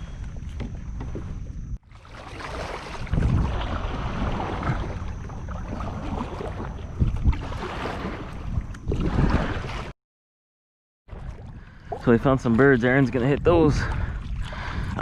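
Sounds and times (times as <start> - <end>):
water noise from kayak: 0.0 - 9.9, 11.1 - 15.0
wind buffeting microphone: 2.6 - 9.9, 11.2 - 15.0.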